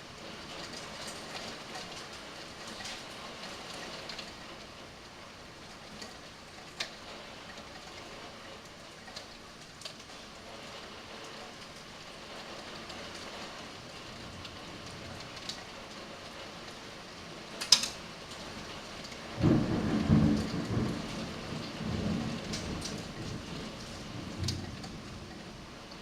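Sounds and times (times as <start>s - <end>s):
hailstones ticking: 0.0s - 26.0s
heavy rain: 0.0s - 26.0s
thunder rumbling: 5.2s - 26.0s.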